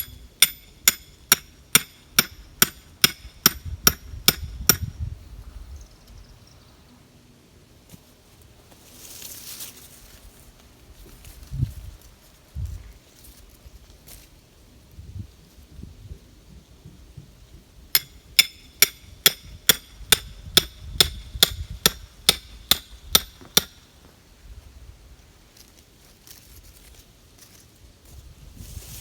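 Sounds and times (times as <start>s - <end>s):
hammer striking steel stake: 0.0s - 4.9s, 17.9s - 23.8s.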